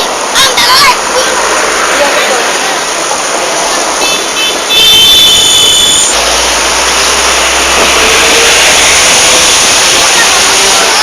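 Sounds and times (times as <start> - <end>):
street traffic noise: 0.0 - 11.0
low vehicle rumble: 6.0 - 11.0.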